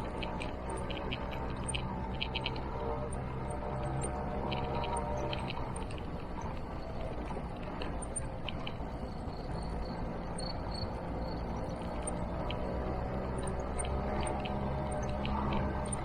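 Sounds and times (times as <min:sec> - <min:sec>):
scooter engine running: 0:10.9 - 0:16.0.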